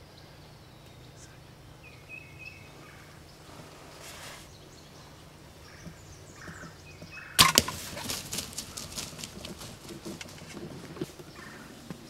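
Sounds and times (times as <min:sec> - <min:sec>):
turkey wing beats and scuffling: 0:05.8 - 0:12.0
bow shot snap: 0:07.4 - 0:08.0.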